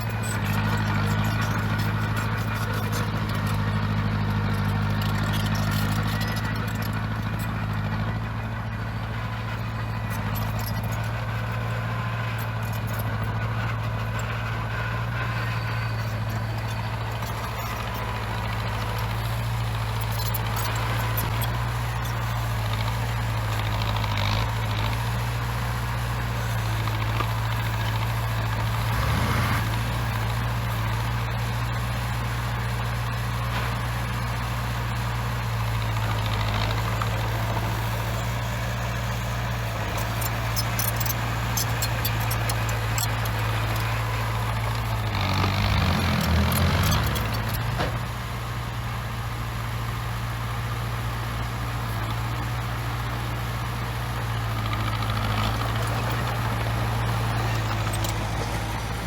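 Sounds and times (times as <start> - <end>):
heavy diesel engine running: 0.0 - 59.0
metallic clicks and rattles: 39.8 - 44.2, 57.2 - 58.8.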